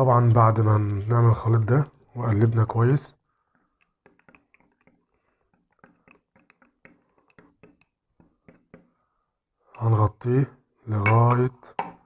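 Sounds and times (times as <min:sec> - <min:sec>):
spoon clinking in glass cup: 0:11.0 - 0:12.0.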